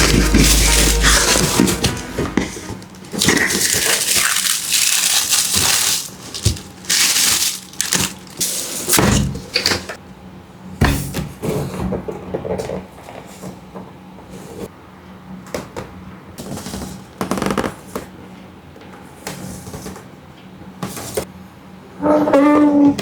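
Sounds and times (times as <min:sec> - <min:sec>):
packaging tearing: 0:00.0 - 0:09.0
toy packaging crinkling: 0:00.0 - 0:09.0.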